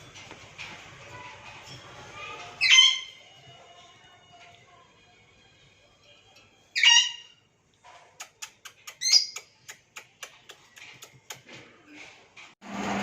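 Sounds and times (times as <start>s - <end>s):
lovebird shrill squawks: 2.6s - 3.2s, 6.8s - 7.4s.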